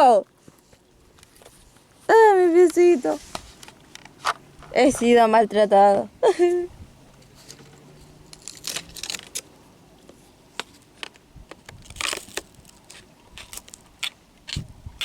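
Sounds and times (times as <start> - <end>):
crunches rustles and clicks: 7.2 - 9.5.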